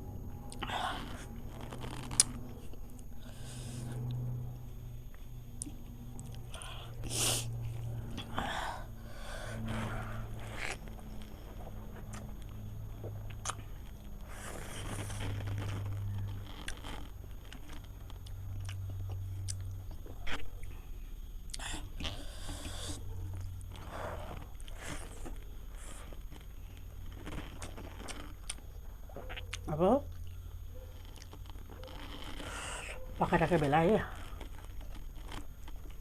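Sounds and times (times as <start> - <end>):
steady low hum: 0.0 - 36.0
person chewing food: 0.4 - 4.3, 9.6 - 20.9, 21.5 - 33.2, 34.1 - 36.0.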